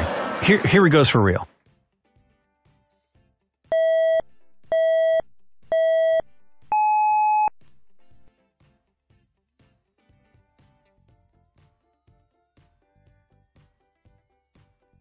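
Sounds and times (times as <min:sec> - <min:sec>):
electronic countdown beeps: 0:03.7 - 0:07.5.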